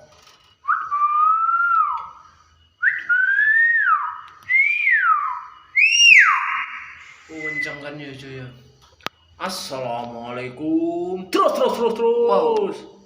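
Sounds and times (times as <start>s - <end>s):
myna whistling: 0.6s - 8.2s.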